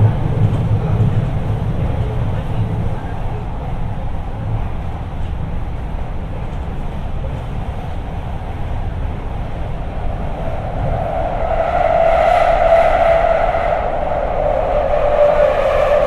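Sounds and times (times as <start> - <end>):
train rumble inside car: 0.0 - 16.0
steady whine: 9.2 - 16.0.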